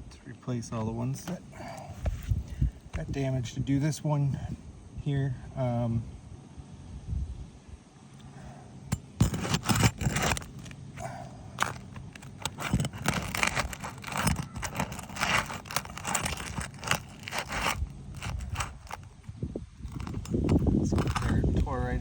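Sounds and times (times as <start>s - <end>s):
roof shingle scraping and crunching: 1.2s - 3.1s, 8.9s - 22.0s.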